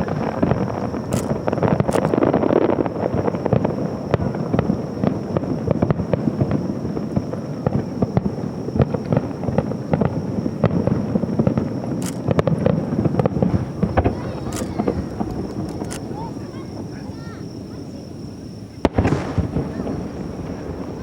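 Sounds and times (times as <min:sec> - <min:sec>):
sharp firework bang: 0:00.0 - 0:17.8, 0:18.8 - 0:21.0
fireworks popping and crackling: 0:00.0 - 0:21.0.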